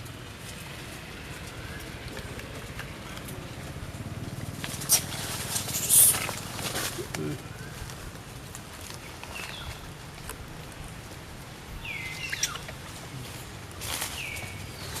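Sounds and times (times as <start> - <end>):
baby monkey squeaky calls: 5.7 - 6.3, 12.0 - 12.8.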